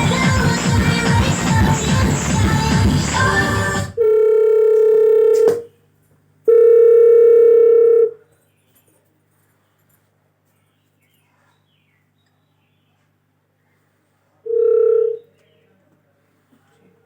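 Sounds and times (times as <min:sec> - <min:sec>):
music: 0:00.0 - 0:04.0
telephone-like tones: 0:04.0 - 0:05.7, 0:06.5 - 0:08.2, 0:14.5 - 0:15.3.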